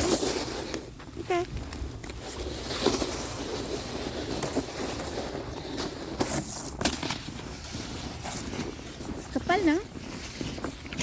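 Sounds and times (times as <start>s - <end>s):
footsteps crunching through snow: 0.0s - 11.0s.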